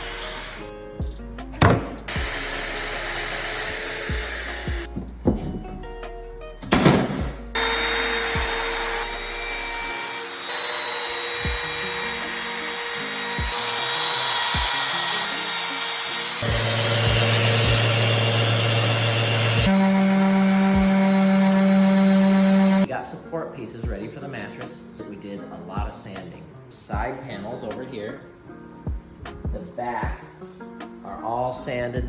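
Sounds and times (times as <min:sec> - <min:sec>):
power tools working wood: 0:00.0 - 0:00.7, 0:01.6 - 0:05.6, 0:06.8 - 0:22.9
background music: 0:00.0 - 0:32.0.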